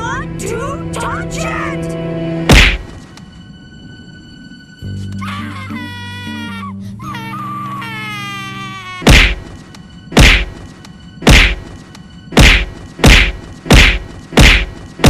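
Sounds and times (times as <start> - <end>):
cartoon punch whacks: 2.5 - 3.0, 9.0 - 10.6, 11.2 - 11.7, 12.3 - 15.0.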